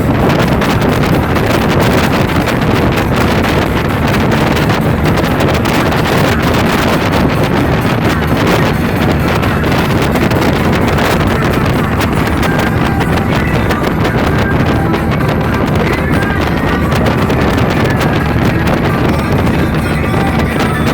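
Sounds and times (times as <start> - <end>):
boat engine and water rushing: 0.0 - 20.9
wind buffeting microphone: 0.0 - 20.9.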